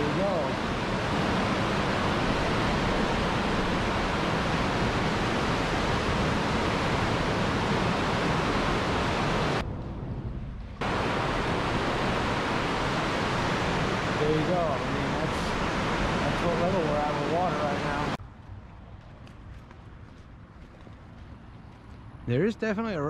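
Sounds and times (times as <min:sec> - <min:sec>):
floodwater rushing: 0:00.0 - 0:09.6, 0:10.8 - 0:18.2.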